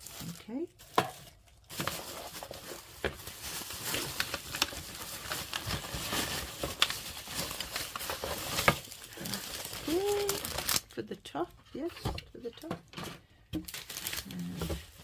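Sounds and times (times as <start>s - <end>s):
packaging rustling and crinkling: 0.0s - 11.0s, 11.7s - 15.0s.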